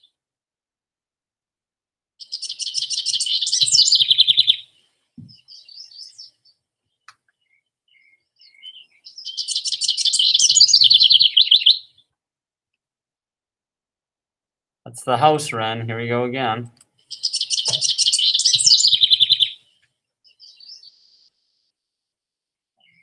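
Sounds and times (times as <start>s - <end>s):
wren trilled song: 2.2s - 12.2s, 15.1s - 21.7s.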